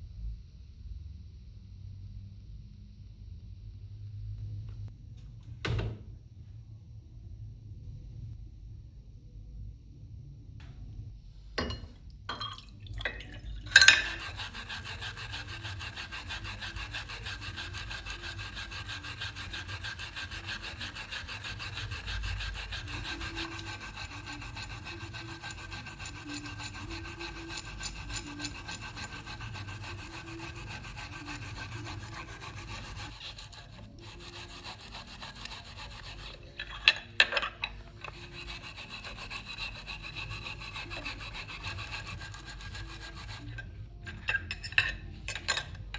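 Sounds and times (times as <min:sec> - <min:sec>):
power tool grinding: 0:13.8 - 0:43.6.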